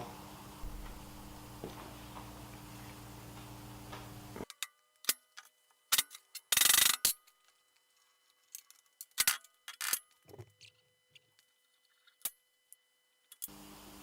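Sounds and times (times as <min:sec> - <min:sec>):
steady hum: 0:00.0 - 0:04.5.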